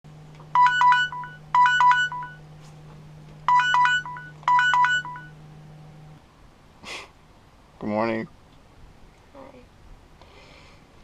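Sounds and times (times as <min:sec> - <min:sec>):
steady low hum: 0:00.1 - 0:11.0
phone alarm beeping melody: 0:00.6 - 0:02.4, 0:03.5 - 0:05.4.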